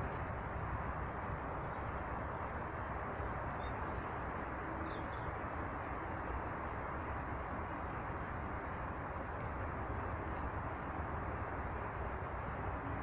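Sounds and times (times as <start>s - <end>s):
steady rushing noise: 0.0s - 6.2s.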